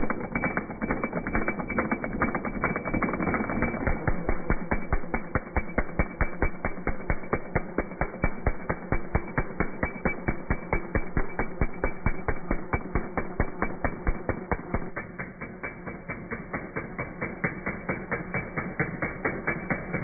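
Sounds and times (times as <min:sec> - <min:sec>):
impact drill hammering: 0:00.0 - 0:20.0
low motor hum: 0:00.0 - 0:20.0.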